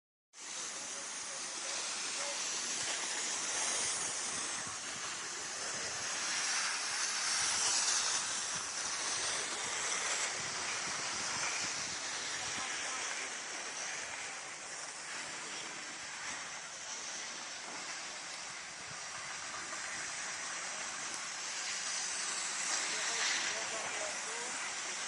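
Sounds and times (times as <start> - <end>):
skis sliding over snow: 0.4 - 25.0.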